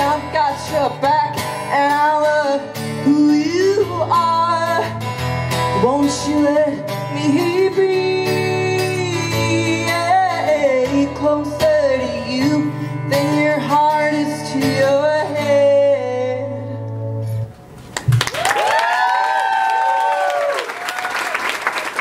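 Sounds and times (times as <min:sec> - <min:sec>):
woman singing wordlessly: 0:00.0 - 0:05.0, 0:05.7 - 0:16.8
guitar chords: 0:00.0 - 0:18.2
audience applause and cheers: 0:18.0 - 0:22.0.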